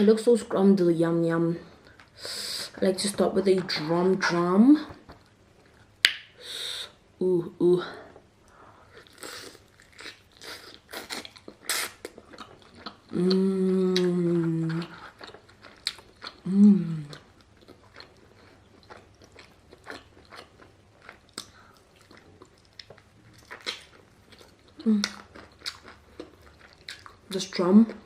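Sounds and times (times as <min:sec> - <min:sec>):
chewing and biting chicken: 0:09.1 - 0:13.1, 0:17.1 - 0:27.2
person humming mmm: 0:13.1 - 0:15.0, 0:16.4 - 0:17.2, 0:24.8 - 0:25.3.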